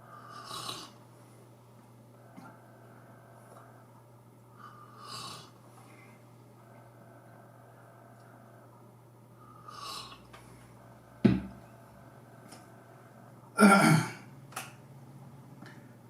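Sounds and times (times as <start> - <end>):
man clearing throat: 13.6 - 14.3
man coughing: 13.6 - 14.3.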